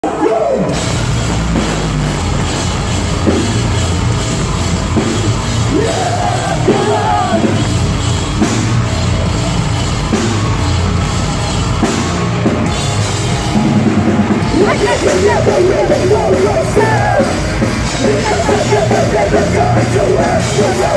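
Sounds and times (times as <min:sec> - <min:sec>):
metal band playing live: 0:00.0 - 0:20.9
person singing: 0:05.7 - 0:07.6, 0:14.5 - 0:20.9.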